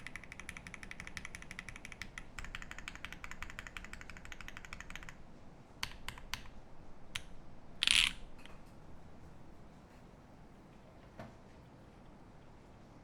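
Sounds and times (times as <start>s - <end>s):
mechanical keyboard keystrokes: 0.0s - 5.2s.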